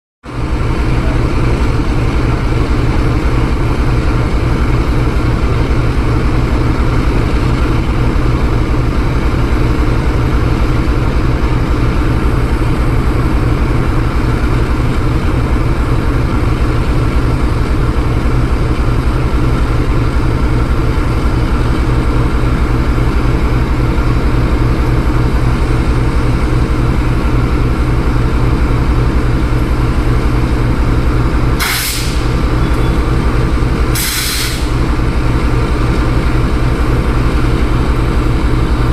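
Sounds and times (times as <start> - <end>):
locomotive diesel engine running: 0.2 - 38.9.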